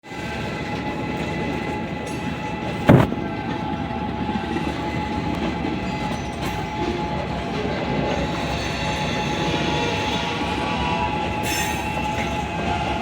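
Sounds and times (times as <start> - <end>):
diesel locomotive rumble: 0.1 - 13.0
sharp bang: 2.9 - 3.3.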